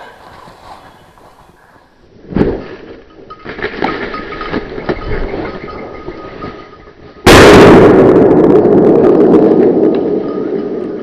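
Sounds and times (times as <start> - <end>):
faint clinks: 3.0 - 7.2.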